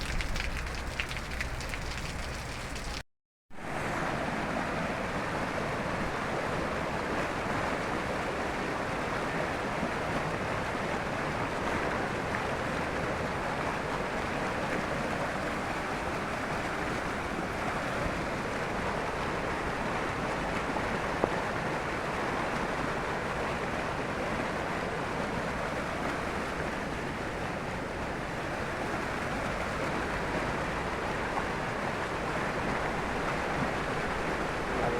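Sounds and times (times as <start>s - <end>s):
heavy rain pouring: 0.0s - 3.0s.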